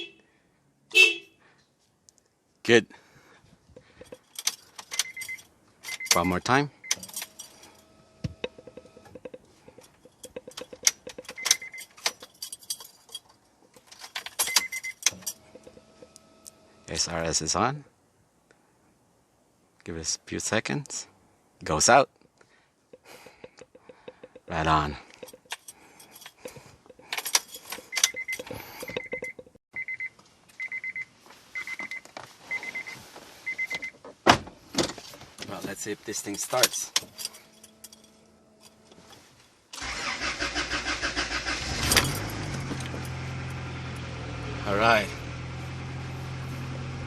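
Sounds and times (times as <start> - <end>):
car keys jangling: 3.8 - 16.2, 22.9 - 29.6, 36.1 - 43.6
car warning chime beeping: 5.0 - 12.0, 14.4 - 16.9, 22.9 - 24.5, 27.8 - 34.0.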